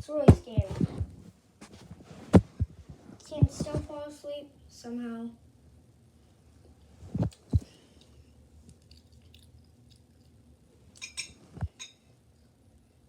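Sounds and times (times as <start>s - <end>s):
dull low thumps: 0.0s - 1.2s, 2.2s - 3.9s.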